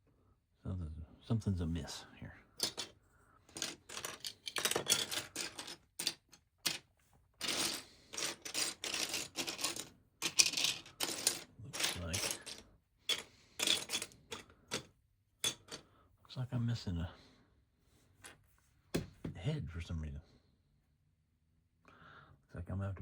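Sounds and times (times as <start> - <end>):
plastic toy pieces clattering: 2.6 - 15.8.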